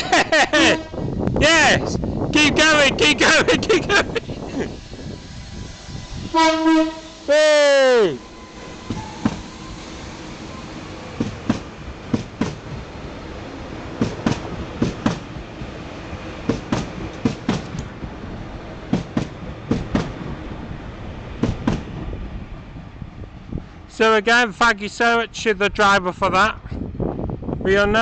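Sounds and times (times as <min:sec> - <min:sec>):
train rolling rumble: 0:00.0 - 0:28.0
train wheels clicking over rail joints: 0:08.5 - 0:22.9.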